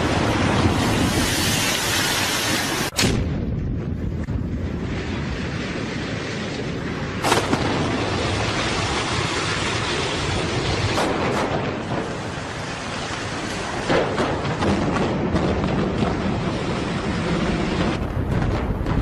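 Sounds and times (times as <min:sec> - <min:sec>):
building collapsing rumble: 0:00.0 - 0:19.0
sharp cracks: 0:06.5 - 0:12.2.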